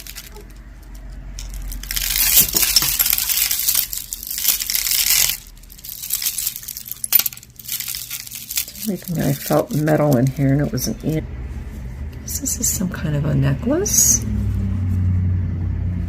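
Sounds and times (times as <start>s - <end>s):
beads clinking and rattling: 0.0s - 11.1s.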